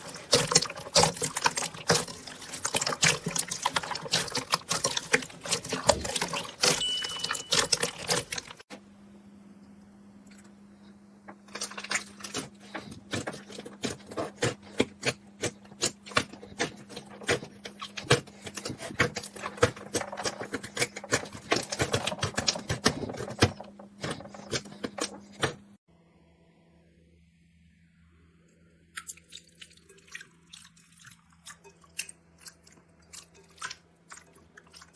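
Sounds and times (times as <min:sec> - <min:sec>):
faint steady hum: 0:00.0 - 0:34.9
knife cutting dry soap: 0:11.6 - 0:25.8.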